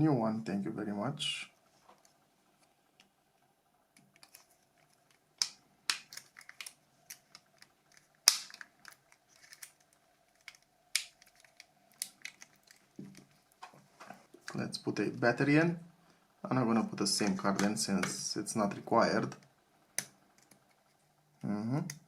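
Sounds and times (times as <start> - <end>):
plastic parts snapping together: 5.1 - 13.3.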